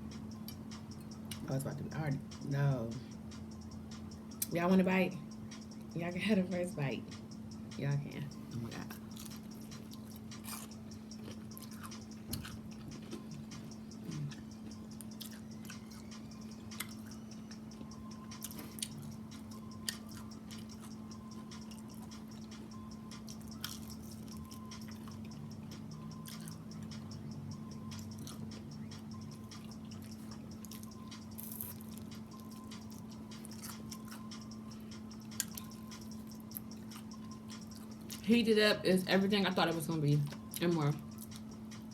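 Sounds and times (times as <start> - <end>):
steady low hum: 0.0 - 41.9
person chewing: 8.5 - 27.1, 27.9 - 38.2.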